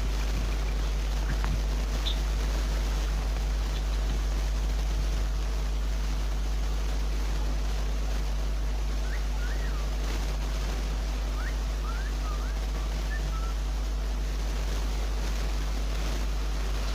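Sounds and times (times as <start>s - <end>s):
low hum with hiss: 0.0s - 16.9s
small bird chirping: 0.3s - 2.3s, 9.0s - 10.1s, 11.1s - 13.7s.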